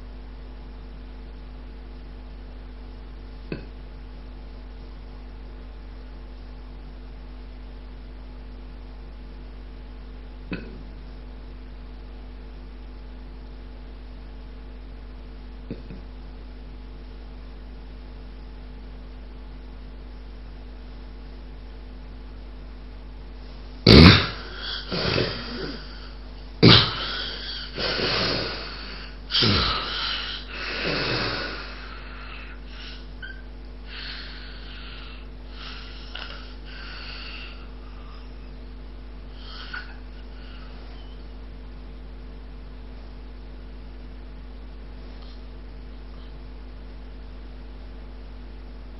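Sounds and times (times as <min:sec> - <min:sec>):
loud snort: 0:23.8 - 0:38.2, 0:39.4 - 0:40.7
heavy snoring gasping breaths: 0:23.9 - 0:33.1
quiet breathing: 0:26.9 - 0:38.6, 0:39.3 - 0:41.2.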